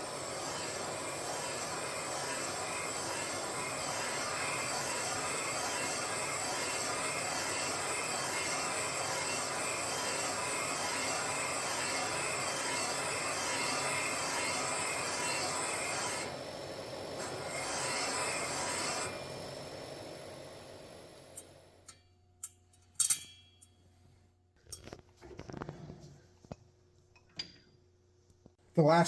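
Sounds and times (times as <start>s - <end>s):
machine tool grinding metal: 0.0s - 16.5s, 17.1s - 19.2s.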